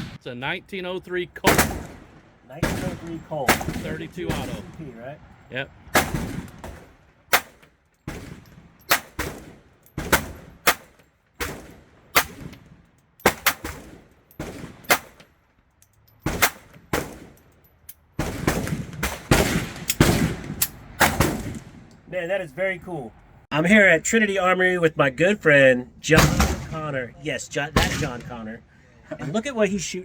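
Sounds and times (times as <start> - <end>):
gunshots with echo: 1.5 - 4.7, 26.2 - 26.8, 27.8 - 28.3.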